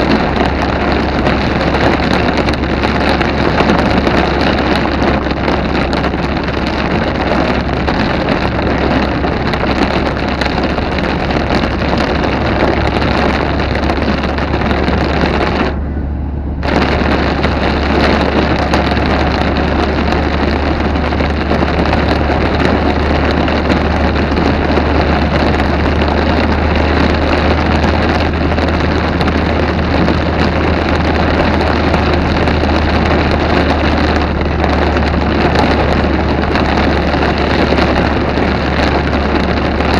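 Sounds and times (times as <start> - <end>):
heavy rain pouring: 0.0 - 39.9
wind buffeting microphone: 0.0 - 39.9.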